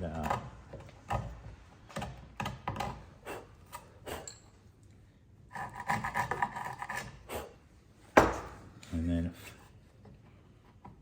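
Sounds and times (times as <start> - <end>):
hand tool scraping wood: 5.5 - 7.6.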